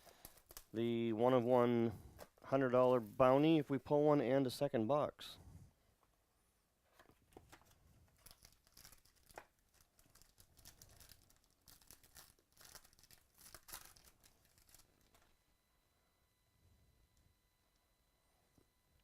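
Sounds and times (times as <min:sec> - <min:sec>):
card packaging tearing and crinkling: 0:00.0 - 0:00.8, 0:07.4 - 0:15.3.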